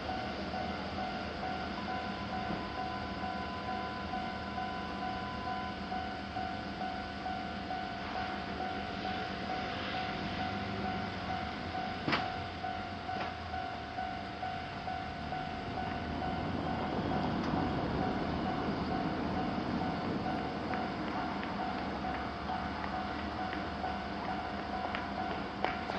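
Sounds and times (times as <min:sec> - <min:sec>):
level-crossing bell ringing: 0:00.0 - 0:21.0
electric train rumbling: 0:00.0 - 0:25.9.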